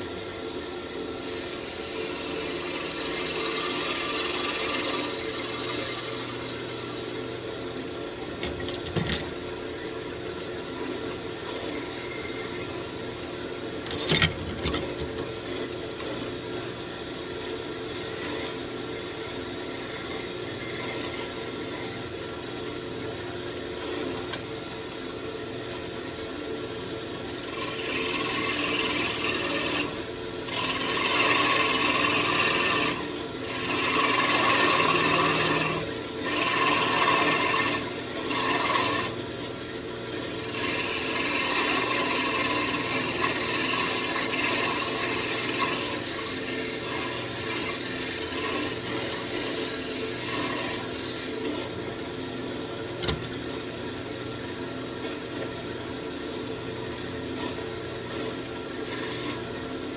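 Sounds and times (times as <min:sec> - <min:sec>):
tool scraping spinning wood: 0:01.2 - 0:07.3, 0:08.2 - 0:09.5, 0:11.6 - 0:12.8, 0:13.7 - 0:15.4, 0:17.2 - 0:22.1, 0:27.4 - 0:39.2, 0:40.4 - 0:51.6, 0:58.8 - 0:59.6
wood lathe humming: 0:01.3 - 0:07.4, 0:11.5 - 0:12.8, 0:17.4 - 0:22.1, 0:27.3 - 0:39.2, 0:40.4 - 0:51.6, 0:58.8 - 0:59.4.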